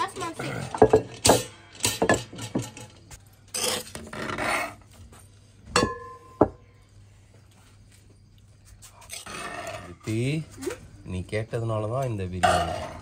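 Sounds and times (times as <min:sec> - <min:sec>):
dishes and cutlery clinking: 0:00.6 - 0:04.0.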